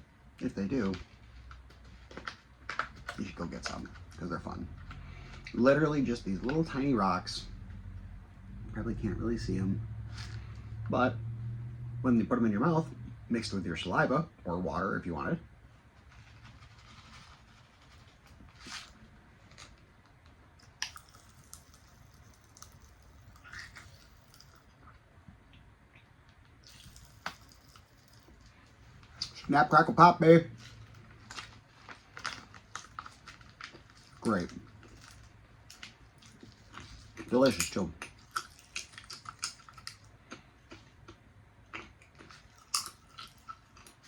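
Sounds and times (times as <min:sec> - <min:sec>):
popping candy crackling: 0:20.6 - 0:24.8, 0:26.5 - 0:30.0
mouth and chewing sounds: 0:20.6 - 0:29.5, 0:30.5 - 0:44.0.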